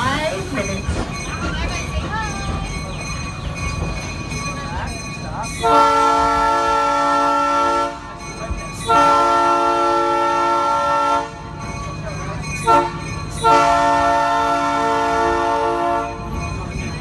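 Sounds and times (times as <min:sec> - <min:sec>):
train rumble: 0:00.0 - 0:17.0
train horn blasts: 0:05.6 - 0:08.2, 0:08.8 - 0:11.6, 0:12.6 - 0:16.3.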